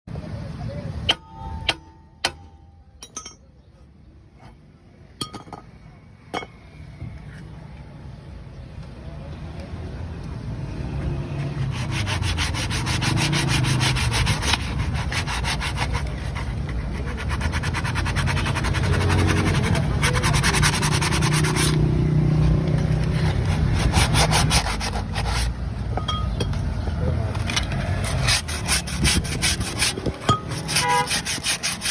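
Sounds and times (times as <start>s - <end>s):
rapid scraping strokes: 11.6s - 25.6s, 27.4s - 31.9s.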